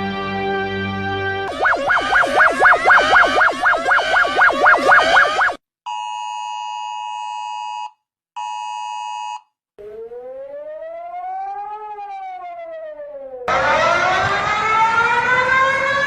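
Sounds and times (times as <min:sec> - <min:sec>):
siren wail: 0:01.5 - 0:05.6, 0:09.8 - 0:16.0
two-tone attention signal: 0:01.5 - 0:05.6
warbling alarm: 0:01.5 - 0:05.6.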